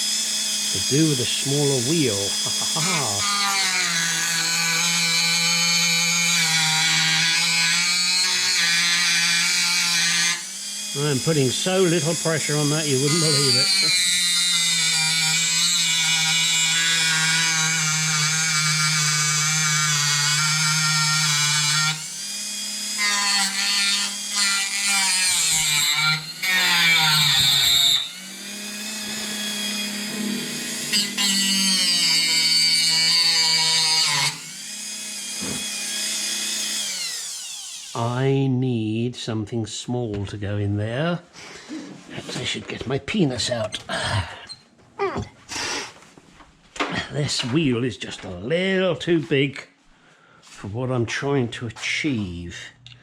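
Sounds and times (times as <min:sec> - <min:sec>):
rotary tool grinding whine: 0:00.0 - 0:38.0.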